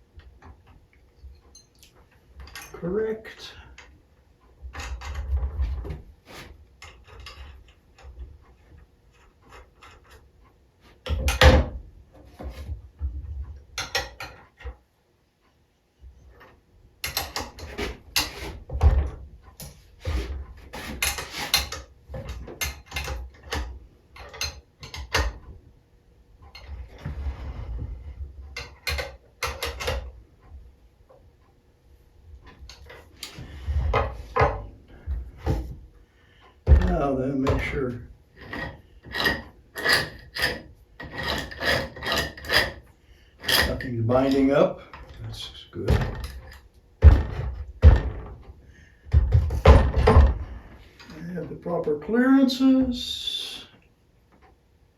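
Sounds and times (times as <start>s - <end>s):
metal engine parts clicking and knocking: 13.0s - 14.8s, 16.3s - 19.8s, 20.5s - 25.6s, 28.4s - 30.1s.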